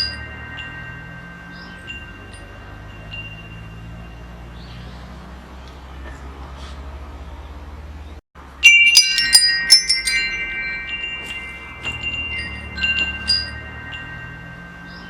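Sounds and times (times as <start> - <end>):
metal wind chimes ringing: 0.0 - 6.2, 8.4 - 15.0.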